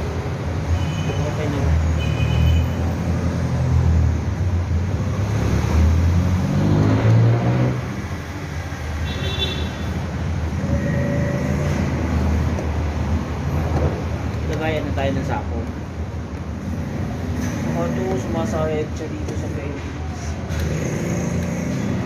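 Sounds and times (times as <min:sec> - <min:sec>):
road traffic rumble: 0:00.0 - 0:22.0
short high tone: 0:10.6 - 0:11.9.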